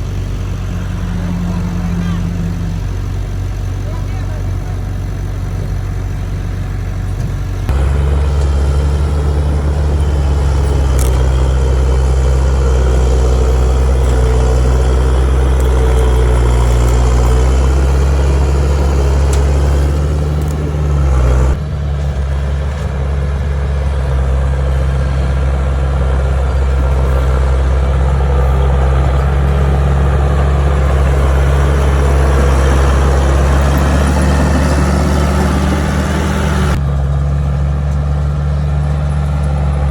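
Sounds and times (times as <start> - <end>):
heavy diesel engine droning: 0.0 - 39.9.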